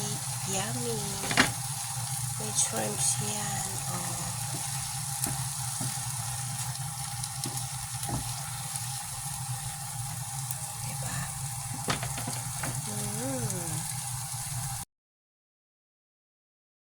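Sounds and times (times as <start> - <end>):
hummed vocal sound: 12.8 - 13.9.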